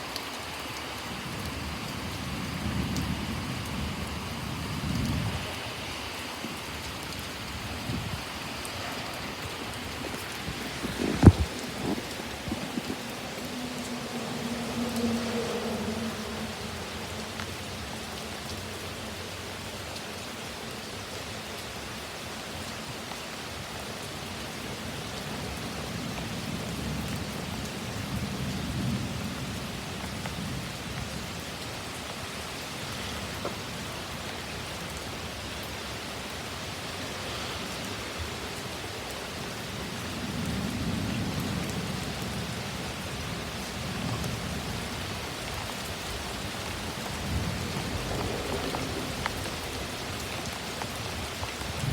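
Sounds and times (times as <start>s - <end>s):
heavy rain pouring: 0.0s - 51.9s
low thunder rumbles: 7.4s - 16.5s, 40.2s - 51.9s.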